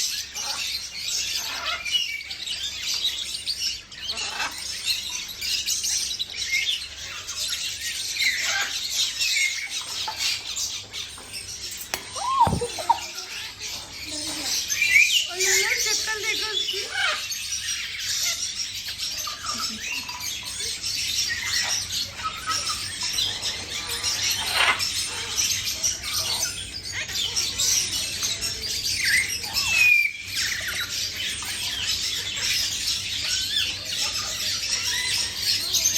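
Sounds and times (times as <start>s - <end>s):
caged birds chirping and squawking: 0.0s - 35.9s.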